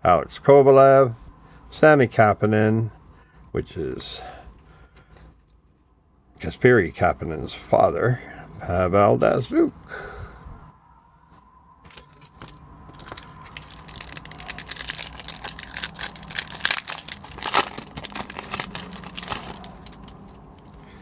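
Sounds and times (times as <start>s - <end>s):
wrapper tearing and crinkling: 11.9s - 20.8s.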